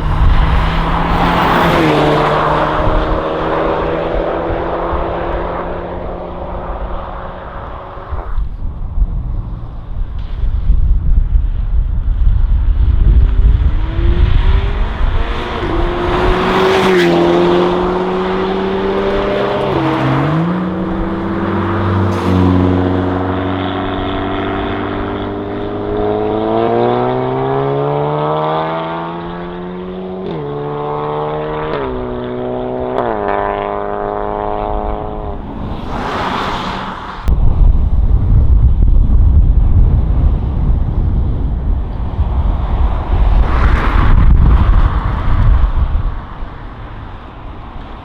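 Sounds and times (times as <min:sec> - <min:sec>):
sports car engine accelerating: 0:00.0 - 0:08.3, 0:13.1 - 0:35.5.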